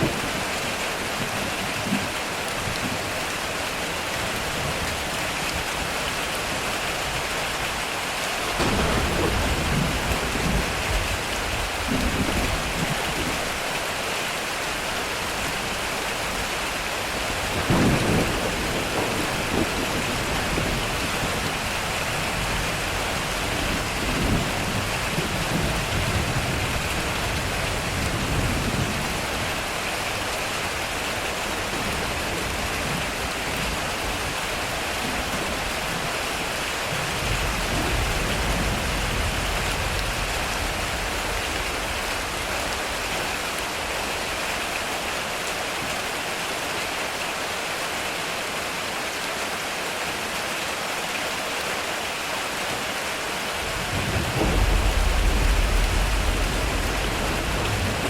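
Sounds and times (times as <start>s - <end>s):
heavy rain on a metal roof: 0.0s - 58.0s
thunder rumbling: 8.4s - 13.7s, 15.3s - 45.2s, 53.5s - 58.0s.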